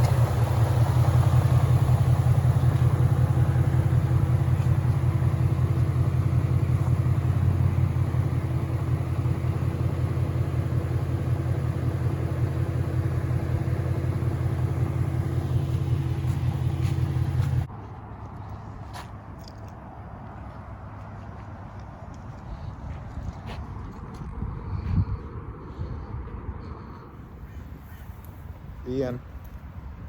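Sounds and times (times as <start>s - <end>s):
car engine running with knock: 0.0s - 17.7s.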